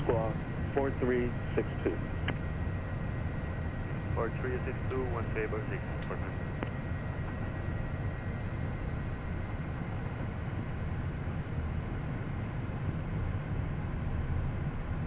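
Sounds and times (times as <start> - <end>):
faint steady tones: 0.0 - 15.0
jet engines running: 0.0 - 15.0.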